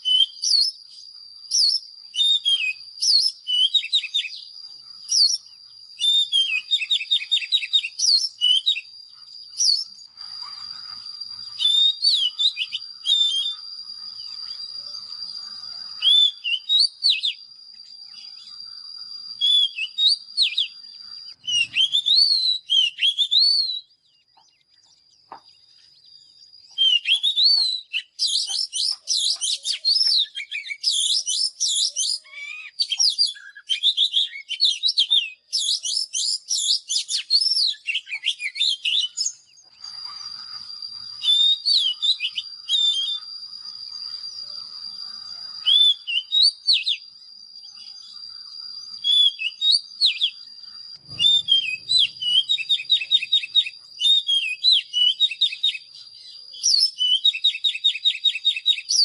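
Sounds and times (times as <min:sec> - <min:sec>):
bird singing whistled phrases: 0:00.0 - 0:59.0.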